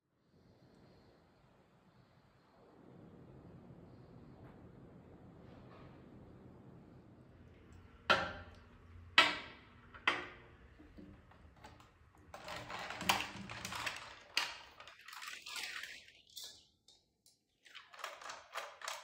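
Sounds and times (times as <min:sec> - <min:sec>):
plastic parts clicking and rattling: 0:10.9 - 0:16.6, 0:17.7 - 0:19.0.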